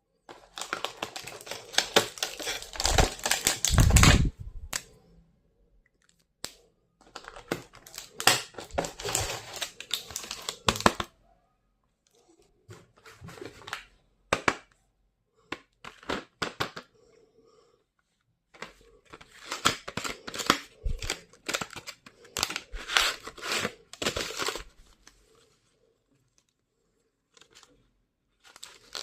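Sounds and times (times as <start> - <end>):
packaging rustling and clicking: 0.3 - 4.9, 7.0 - 11.1, 18.6 - 25.2, 28.4 - 29.0.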